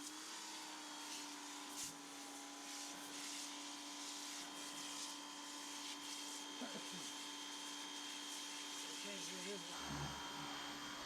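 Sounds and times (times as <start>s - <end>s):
small motor humming: 0.0s - 11.0s.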